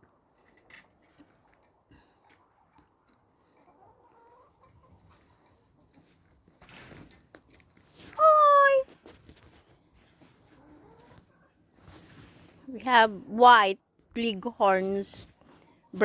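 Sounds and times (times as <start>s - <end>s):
faint ticks and rustles: 0.0s - 8.2s
chickens clucking: 2.2s - 6.2s, 10.4s - 11.6s.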